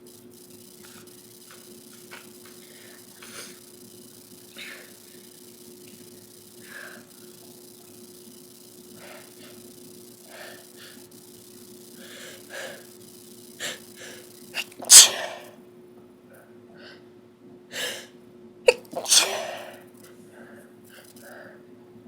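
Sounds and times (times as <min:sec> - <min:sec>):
sharp breaths: 0:02.5 - 0:03.8, 0:04.5 - 0:05.4, 0:06.5 - 0:07.4, 0:08.9 - 0:11.2, 0:11.9 - 0:15.5, 0:19.0 - 0:19.8
person sneezing: 0:14.6 - 0:15.5, 0:18.7 - 0:19.8.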